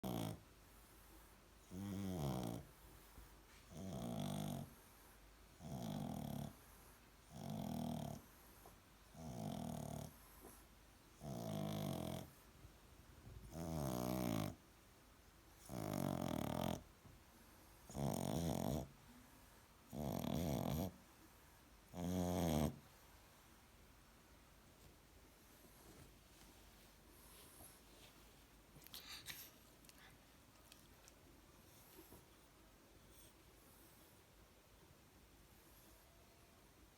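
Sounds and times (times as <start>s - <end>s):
dog snoring: 0.0s - 0.4s, 1.6s - 2.8s, 3.7s - 4.8s, 5.5s - 8.4s, 9.1s - 10.6s, 11.2s - 12.4s, 13.4s - 14.6s, 15.6s - 16.9s, 17.8s - 18.9s, 19.9s - 21.0s, 21.9s - 22.8s.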